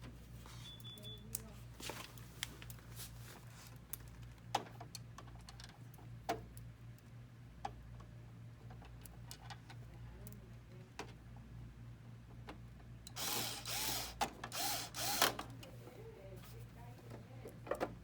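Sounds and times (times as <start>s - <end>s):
steady low hum: 0.0s - 18.0s
light clicks and knocks of parts: 3.6s - 11.2s.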